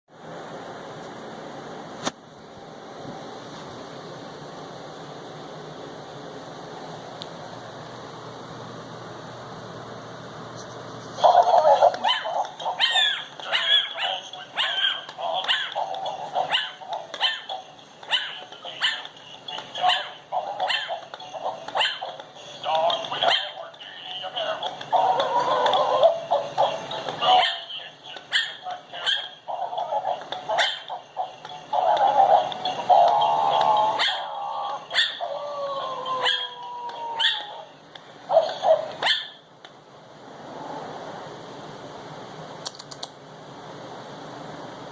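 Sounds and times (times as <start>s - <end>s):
puppy yapping: 11.2s - 17.5s, 18.1s - 19.1s, 19.8s - 21.0s, 21.8s - 22.2s, 27.4s - 27.7s, 28.3s - 31.0s, 31.8s - 37.7s, 38.3s - 39.4s.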